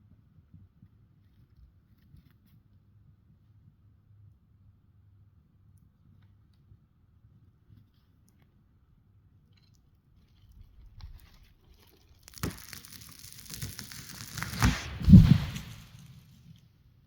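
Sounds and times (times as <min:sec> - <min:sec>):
tree trunk cracking: 0:10.8 - 0:16.4
wood and branches tearing: 0:11.2 - 0:16.4
heavy thuds on ground: 0:14.6 - 0:16.1.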